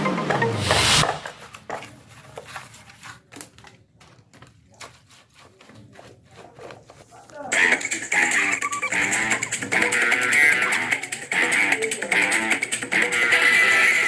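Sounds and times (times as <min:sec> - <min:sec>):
loud whoosh of noise: 0:00.0 - 0:01.4.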